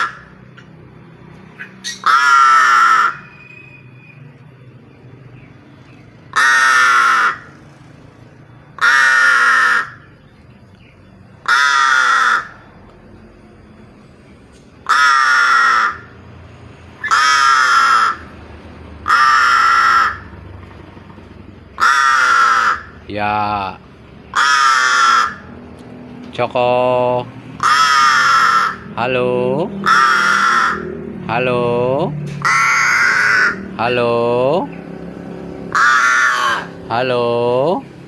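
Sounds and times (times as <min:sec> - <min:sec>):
crow cawing loudly: 0:00.0 - 0:00.4, 0:01.6 - 0:03.3, 0:06.3 - 0:07.5, 0:08.7 - 0:10.1, 0:11.4 - 0:12.7, 0:14.8 - 0:16.2, 0:17.0 - 0:20.5, 0:21.7 - 0:23.1, 0:24.3 - 0:25.5, 0:27.6 - 0:29.2, 0:29.8 - 0:31.4, 0:32.4 - 0:34.0, 0:35.3 - 0:37.0.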